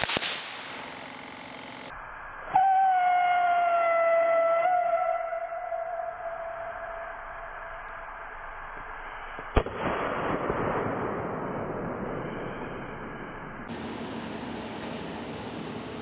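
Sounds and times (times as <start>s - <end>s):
firework bang: 0.0s - 1.1s, 9.4s - 13.2s
firework hissing and crackling: 0.0s - 1.9s.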